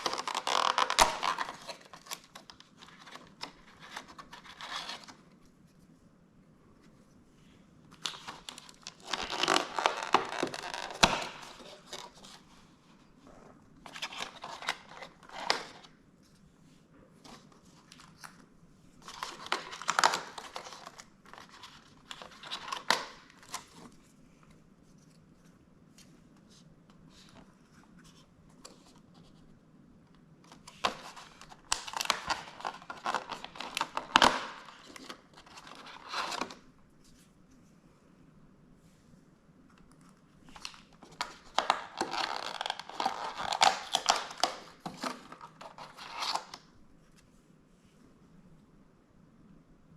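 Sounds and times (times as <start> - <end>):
cardboard packaging tearing: 0.0 - 3.2, 8.1 - 12.2, 41.2 - 46.6.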